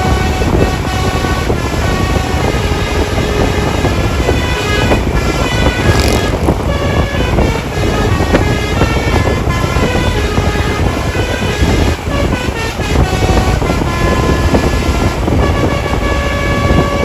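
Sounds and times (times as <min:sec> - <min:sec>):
bus horn playing a tune: 0:00.0 - 0:17.0
bus rumble: 0:00.0 - 0:17.0
wind: 0:00.0 - 0:17.0.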